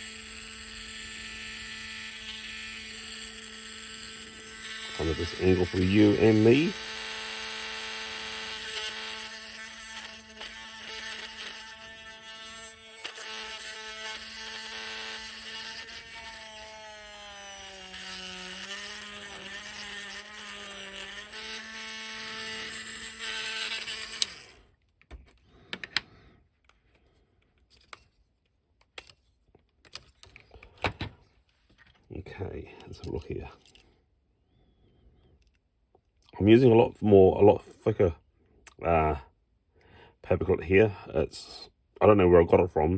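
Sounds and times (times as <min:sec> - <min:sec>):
electric drill whining: 0:00.0 - 0:26.2.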